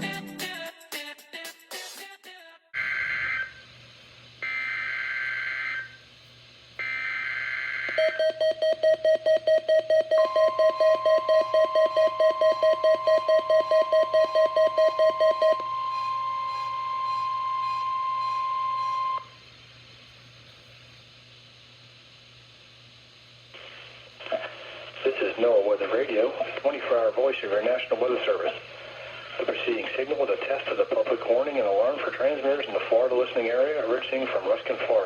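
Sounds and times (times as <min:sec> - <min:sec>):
steady high alert tone: 0:08.0 - 0:19.4
pulsing tone: 0:09.9 - 0:19.4
screechy digital data bursts: 0:10.2 - 0:19.3.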